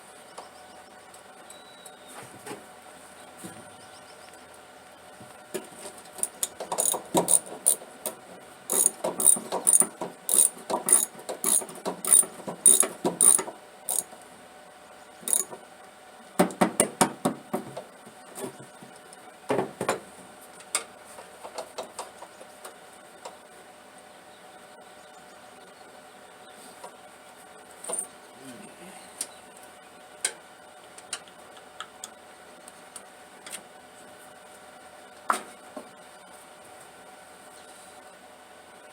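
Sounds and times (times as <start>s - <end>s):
hand ratchet clicking: 6.2s - 14.1s, 15.3s - 15.6s.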